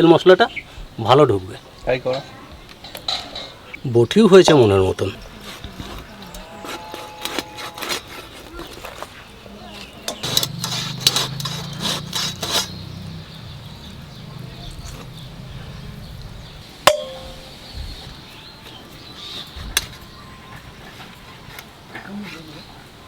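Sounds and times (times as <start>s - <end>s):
metallic clang: 16.8s - 17.6s.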